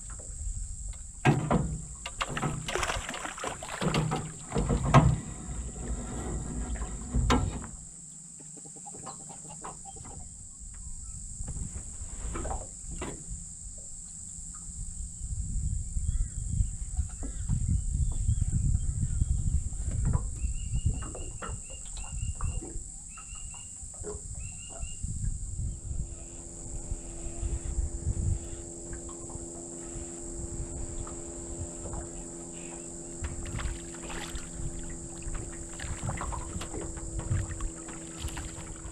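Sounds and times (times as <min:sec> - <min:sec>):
wind rumble on microphone: 0:00.0 - 0:07.9, 0:09.7 - 0:38.9
low engine hum: 0:00.0 - 0:08.4, 0:09.0 - 0:38.9
high-pitched insect drone: 0:20.4 - 0:38.9.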